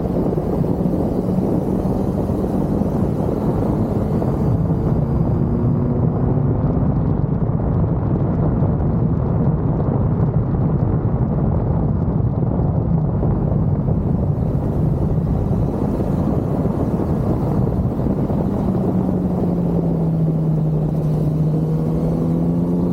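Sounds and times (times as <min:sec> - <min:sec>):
motorcycle engine running: 0:00.0 - 0:07.7, 0:13.0 - 0:22.9
wind rushing over microphone: 0:00.0 - 0:22.9.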